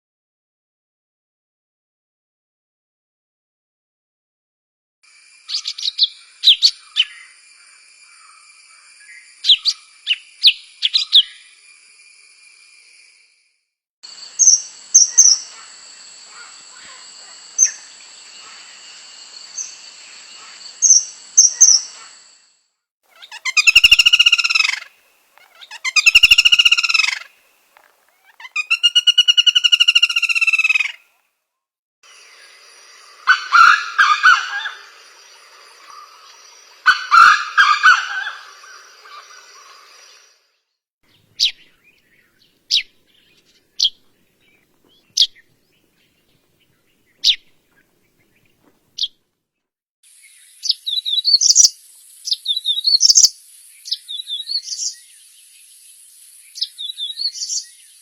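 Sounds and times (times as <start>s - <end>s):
long arched bird calls: 5.4s - 11.6s, 14.3s - 22.0s, 23.1s - 31.1s, 33.2s - 40.4s, 50.1s - 58.0s
background hiss: 14.1s - 22.5s, 23.1s - 31.1s, 50.1s - 58.0s
sharp high bird chirps: 14.4s - 15.5s, 20.8s - 22.0s, 23.1s - 27.3s, 28.2s - 31.0s, 50.2s - 55.1s
quick high bird warbling: 23.1s - 27.3s
low bird calls: 23.1s - 31.0s.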